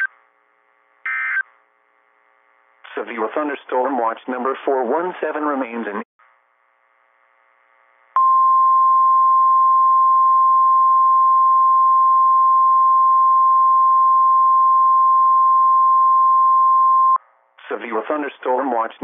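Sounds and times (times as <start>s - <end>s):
radio hiss: 2.8s - 4.1s, 17.6s - 19.0s.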